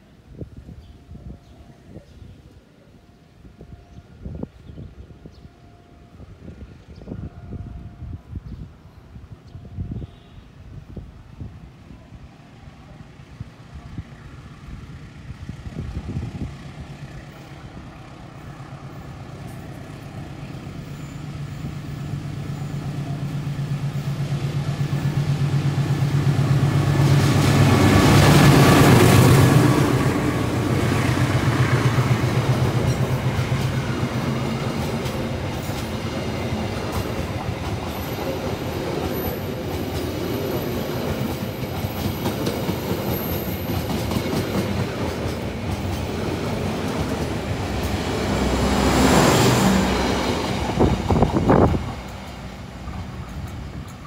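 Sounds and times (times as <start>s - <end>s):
train engine hum: 0.0s - 54.0s.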